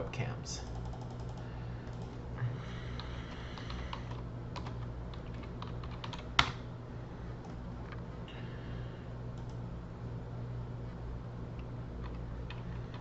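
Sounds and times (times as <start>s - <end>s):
steady low hum: 0.0s - 13.0s
computer keyboard typing: 0.7s - 2.2s, 3.0s - 6.6s, 12.0s - 13.0s.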